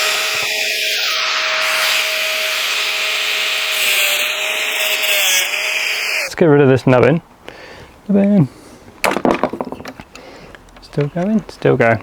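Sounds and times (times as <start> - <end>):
grinder cutting steel: 0.0 - 6.3.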